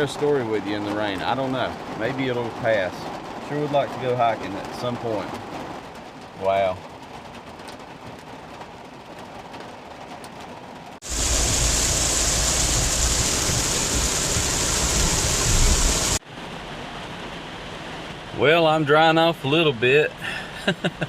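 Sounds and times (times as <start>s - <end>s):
heavy rain pouring: 0.0s - 19.8s
low rumble: 11.0s - 16.2s.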